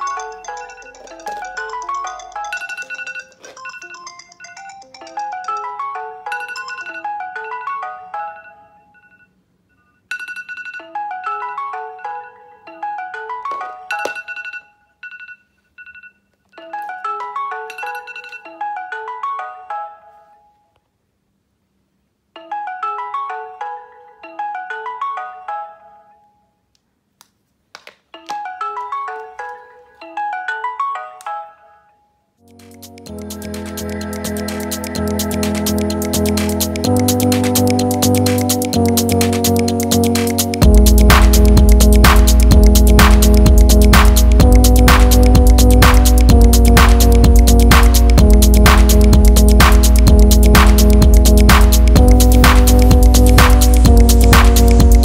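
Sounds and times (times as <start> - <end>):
phone ringtone melody: 0.0 - 20.5, 32.6 - 55.0.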